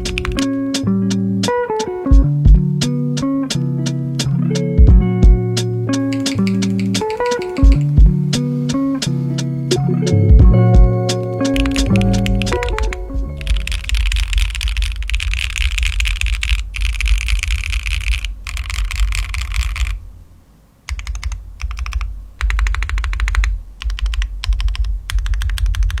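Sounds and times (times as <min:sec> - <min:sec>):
mechanical keyboard typing: 0:00.0 - 0:00.6, 0:06.1 - 0:08.0, 0:11.5 - 0:20.0, 0:20.9 - 0:26.0.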